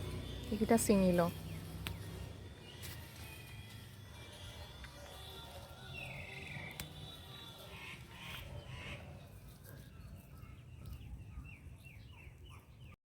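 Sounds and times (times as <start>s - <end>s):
faint bird calls: 5.9s - 9.4s.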